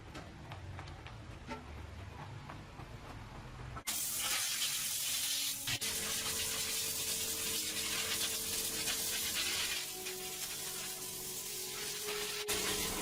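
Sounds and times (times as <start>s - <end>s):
spraying hiss: 3.9s - 13.0s.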